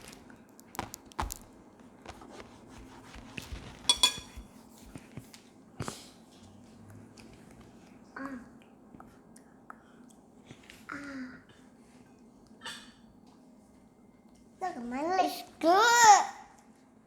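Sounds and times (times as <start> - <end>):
utensils clicking on bowls: 3.7 - 4.5.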